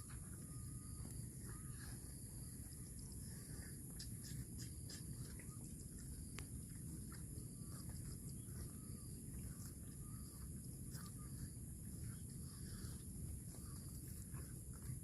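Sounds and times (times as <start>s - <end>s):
insect drone: 0.0s - 15.0s.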